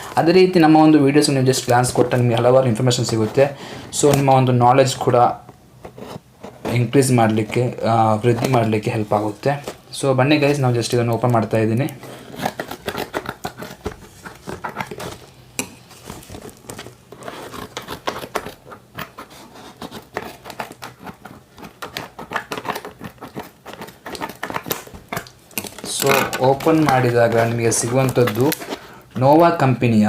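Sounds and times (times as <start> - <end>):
cardboard packaging rustling: 0.0 - 29.9.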